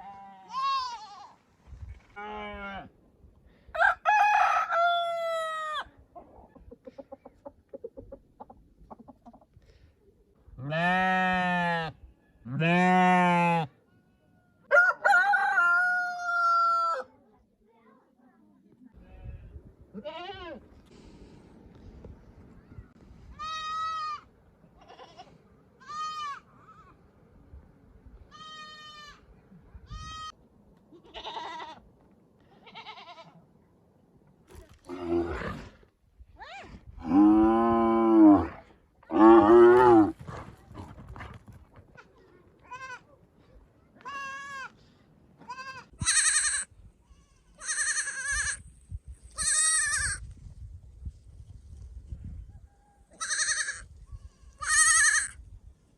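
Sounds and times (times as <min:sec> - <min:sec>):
sheep bleating low: 0:10.6 - 0:13.7, 0:45.5 - 0:48.6
lambs bleating: 0:31.0 - 0:31.8, 0:45.5 - 0:48.6, 0:49.4 - 0:50.2, 0:53.2 - 0:53.8, 0:54.6 - 0:55.4.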